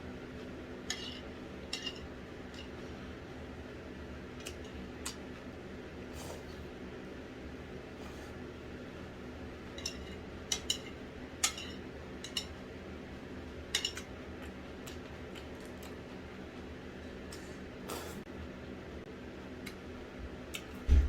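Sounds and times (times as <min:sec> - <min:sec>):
steady low hum: 0:00.0 - 0:21.0
utensils clinking against dishes: 0:00.8 - 0:02.7, 0:09.7 - 0:12.6, 0:13.7 - 0:14.1.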